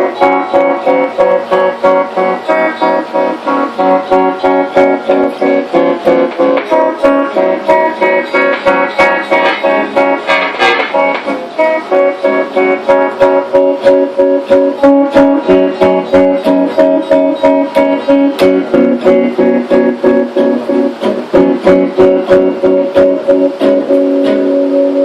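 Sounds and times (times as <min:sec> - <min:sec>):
guitar strumming chords: 0:00.0 - 0:25.0.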